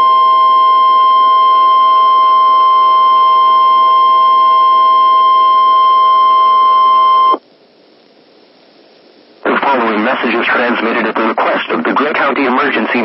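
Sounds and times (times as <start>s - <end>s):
emergency alert tone: 0.0s - 7.4s.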